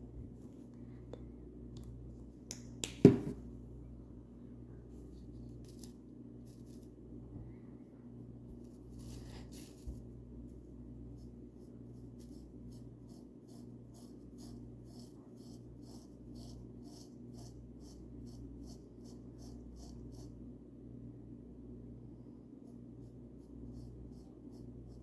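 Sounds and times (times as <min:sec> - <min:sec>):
steady low hum: 0:00.0 - 0:25.0
scratchy paint brush strokes: 0:05.0 - 0:07.0, 0:08.6 - 0:20.4.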